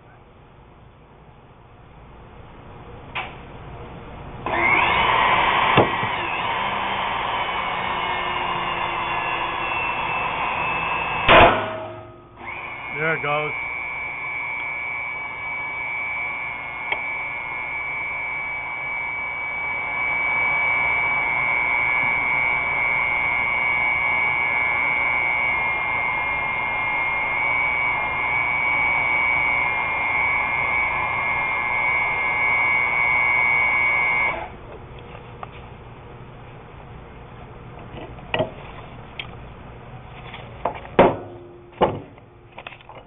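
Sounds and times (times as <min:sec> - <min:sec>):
hydraulic pump whining: 0:04.4 - 0:35.9.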